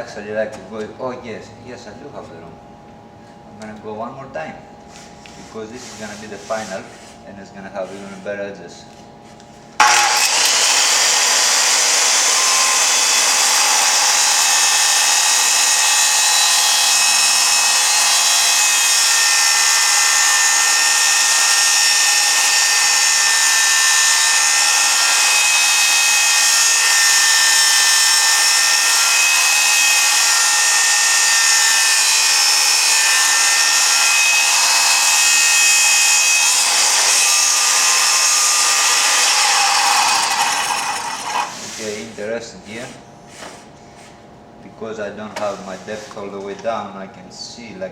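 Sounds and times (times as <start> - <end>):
circular saw cutting wood: 9.8 - 43.0, 45.4 - 46.4.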